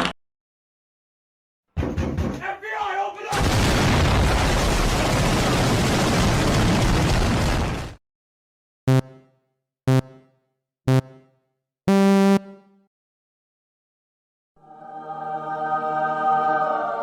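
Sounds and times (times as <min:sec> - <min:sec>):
synthesized countdown beeps: 0:08.9 - 0:12.9.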